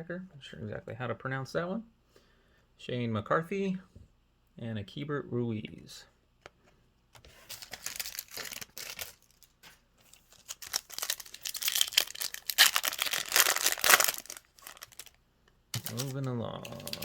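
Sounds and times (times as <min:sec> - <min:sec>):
foil wrapper crinkling and tearing: 0:07.4 - 0:15.2, 0:15.8 - 0:17.0.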